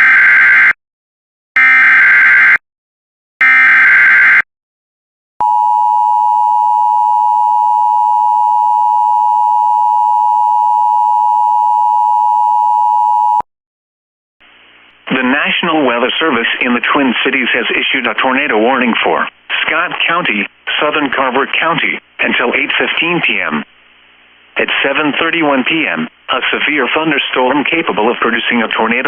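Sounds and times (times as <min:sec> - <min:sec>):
two-tone attention signal: 0:05.4 - 0:13.4.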